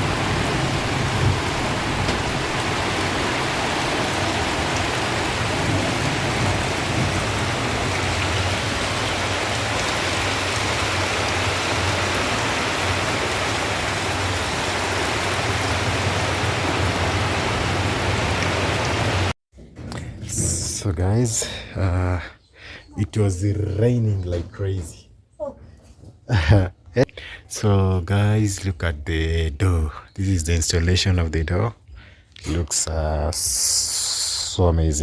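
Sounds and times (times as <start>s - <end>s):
heavy rain falling: 0.0s - 19.4s.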